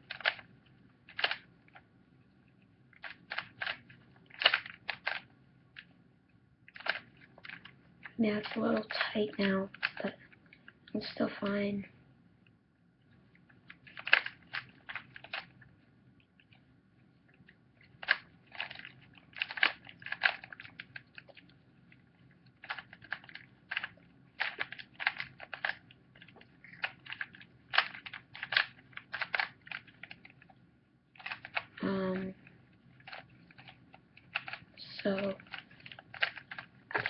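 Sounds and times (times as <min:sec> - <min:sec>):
puzzle cube clicking: 0:00.0 - 0:00.5, 0:01.1 - 0:01.8, 0:03.0 - 0:05.9, 0:06.7 - 0:10.2, 0:13.7 - 0:15.6, 0:17.8 - 0:21.6, 0:22.5 - 0:30.6, 0:31.2 - 0:32.4, 0:33.0 - 0:37.0.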